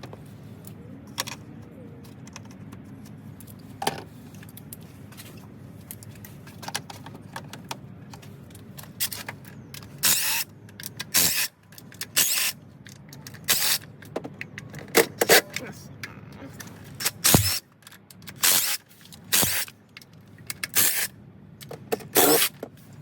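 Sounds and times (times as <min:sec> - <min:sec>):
loud rasping bursts: 0:17.1 - 0:17.7, 0:18.4 - 0:19.7, 0:22.1 - 0:22.6.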